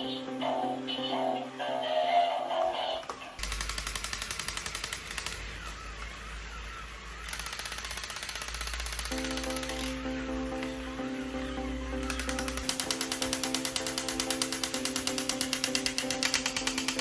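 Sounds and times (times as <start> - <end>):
mechanical whirring: 3.0 - 10.1
electric toy gun firing bursts: 3.4 - 5.9, 7.2 - 10.0, 12.1 - 17.0.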